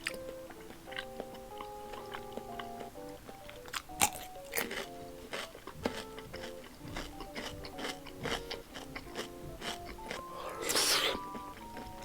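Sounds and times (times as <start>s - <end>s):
background music held notes: 0.0s - 12.0s
person chewing crunchy food: 0.0s - 12.0s.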